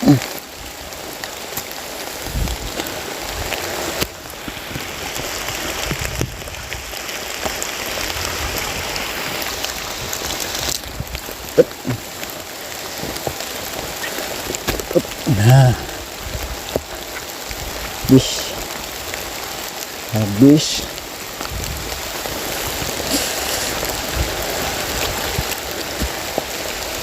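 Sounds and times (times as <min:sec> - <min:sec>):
heavy rain falling: 0:00.0 - 0:27.0.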